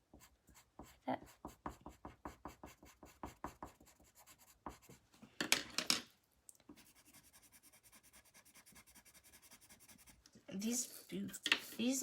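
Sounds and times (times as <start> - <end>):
pencil scratching on paper: 0.0 - 5.0, 6.8 - 10.2.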